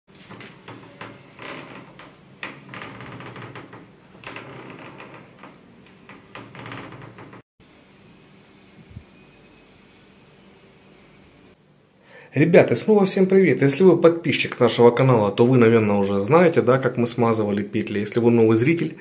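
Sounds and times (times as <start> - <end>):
door hinges creaking: 0.2 - 7.4.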